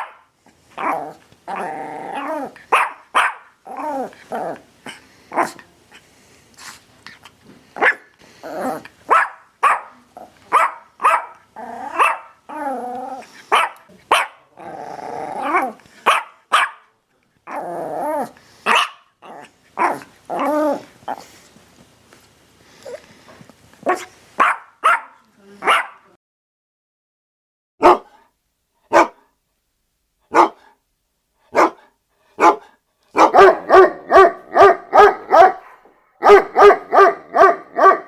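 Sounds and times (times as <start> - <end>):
dogs barking: 0.0 - 0.2, 2.7 - 3.5, 7.8 - 8.1, 9.1 - 12.4, 13.5 - 14.4, 16.0 - 16.8, 18.7 - 19.1, 23.9 - 26.1, 27.8 - 28.1, 28.9 - 29.2, 30.3 - 30.7, 31.5 - 31.8, 32.4 - 38.0
dogs growling: 0.8 - 2.7, 3.6 - 5.7, 8.2 - 9.0, 11.3 - 13.5, 14.5 - 16.0, 17.5 - 21.5.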